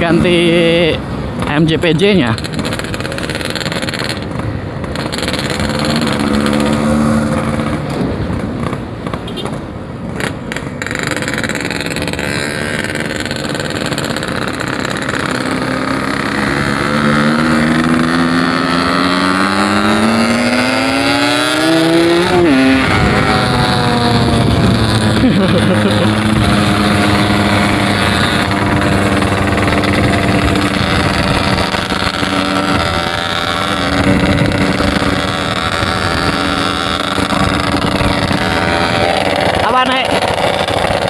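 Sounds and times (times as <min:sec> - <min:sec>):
two-stroke motorcycle engine revving: 0:00.0 - 0:09.4, 0:10.2 - 0:41.0.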